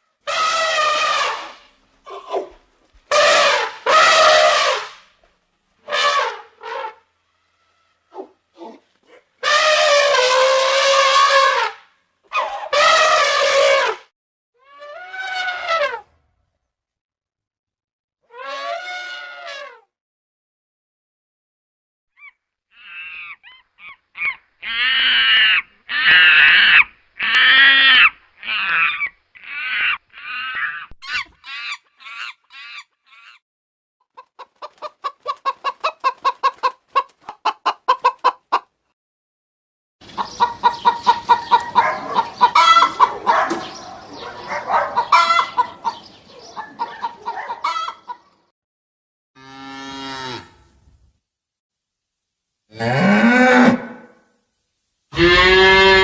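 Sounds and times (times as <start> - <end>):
chickens clucking and calling: 31.0 - 33.4, 34.1 - 38.8, 40.0 - 48.4.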